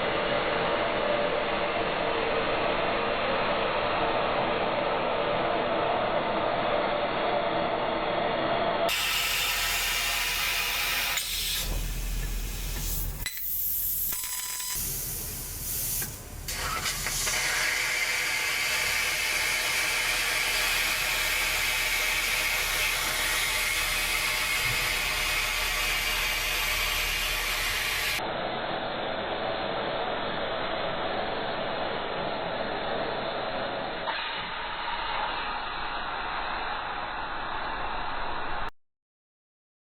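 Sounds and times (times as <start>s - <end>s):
laser cutting machine hiss: 8.9s - 28.2s.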